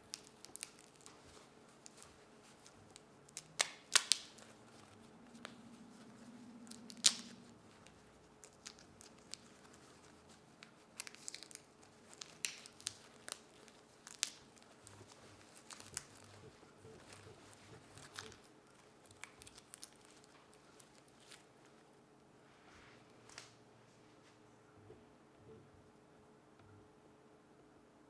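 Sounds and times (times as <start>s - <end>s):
chestnut shells cracking: 0.0s - 1.2s, 2.9s - 4.5s, 6.5s - 9.8s, 10.6s - 16.3s.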